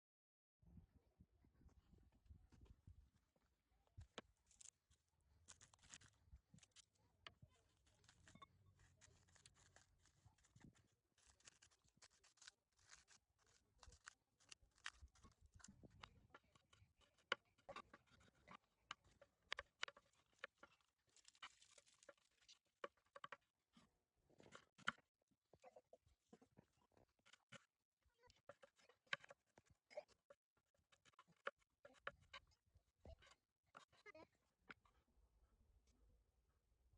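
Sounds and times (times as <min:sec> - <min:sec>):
clicks and taps of handled objects: 0:14.5 - 0:23.5, 0:28.3 - 0:32.5.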